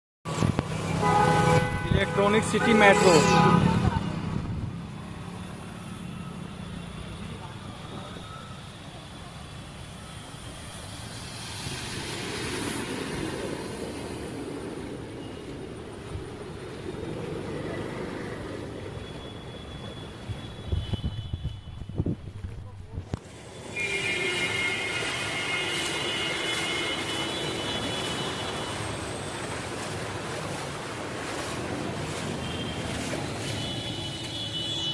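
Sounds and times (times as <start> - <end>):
traffic on wet street: 0.3 - 34.9
heavy rain: 23.0 - 34.9
vehicle passing: 29.0 - 33.5.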